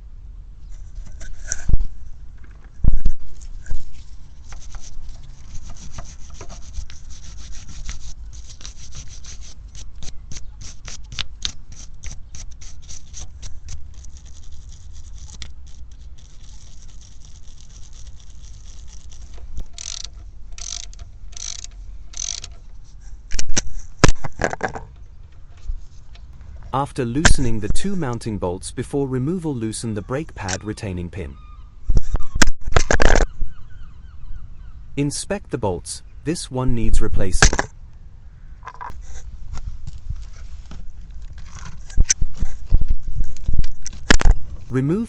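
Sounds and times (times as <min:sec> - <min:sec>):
brush scrubbing metal: 0:03.8 - 0:19.9.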